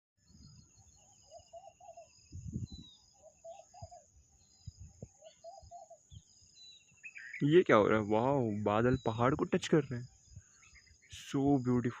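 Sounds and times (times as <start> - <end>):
bird calling in low notes: 0.6 - 12.0
wind rumbling on microphone: 2.2 - 6.4, 8.4 - 10.6.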